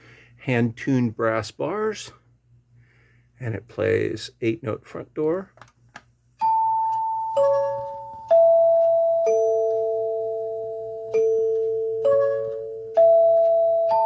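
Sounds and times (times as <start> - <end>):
door chime tone bars ringing: 6.4 - 14.0.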